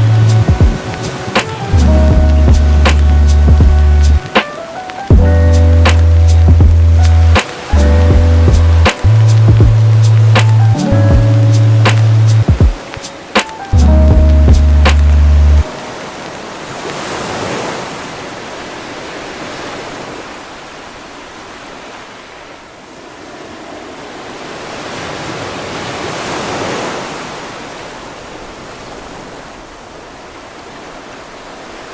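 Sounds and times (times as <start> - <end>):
steady rushing outdoor noise: 0.0 - 31.9.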